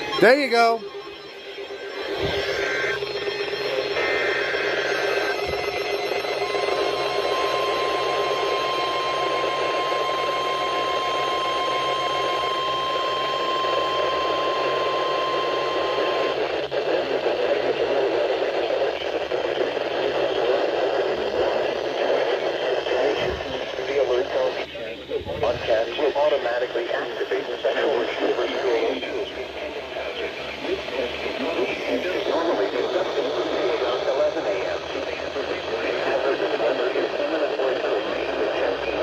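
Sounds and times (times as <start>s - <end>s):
warbling data bursts: 0.0s - 16.5s
steady warning alarm tone: 0.0s - 17.2s
radio static: 0.0s - 39.0s.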